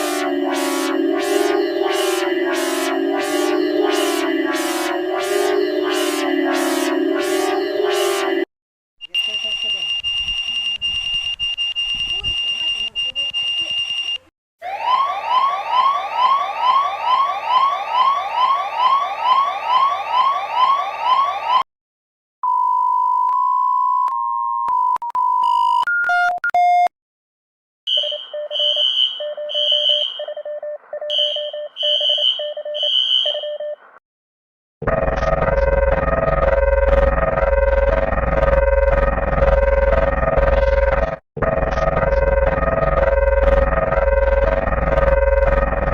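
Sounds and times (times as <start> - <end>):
rising alarm sweep: 0.0 - 8.5, 14.6 - 21.6, 34.8 - 45.9
steady alarm tone: 0.0 - 8.5, 31.1 - 33.5, 34.8 - 45.9
synthesizer music: 0.0 - 8.5, 34.8 - 45.9
high alert beeps: 0.0 - 10.0.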